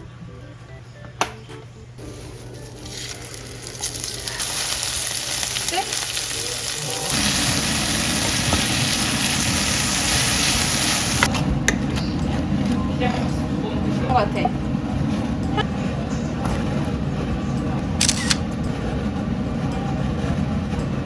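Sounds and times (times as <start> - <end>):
food sizzling in a pan: 2.0 - 11.3.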